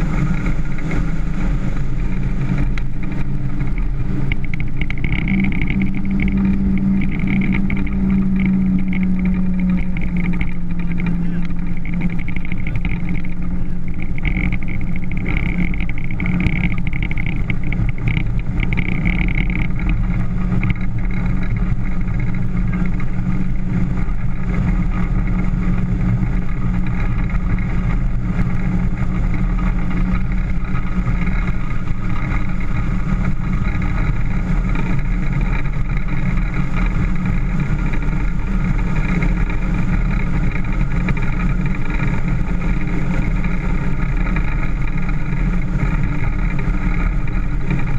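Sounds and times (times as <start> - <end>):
motorboat engine drone: 0.0 - 47.9.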